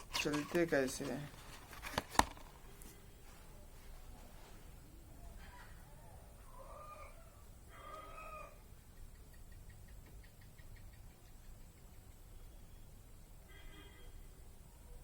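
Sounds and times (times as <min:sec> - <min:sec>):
faint evenly spaced ticks: 0:08.7 - 0:12.6.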